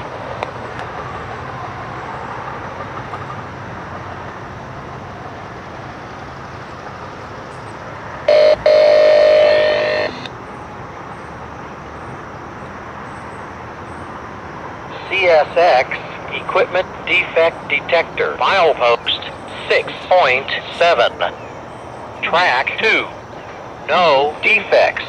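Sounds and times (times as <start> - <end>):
train air horn blasts: 8.3 - 10.3.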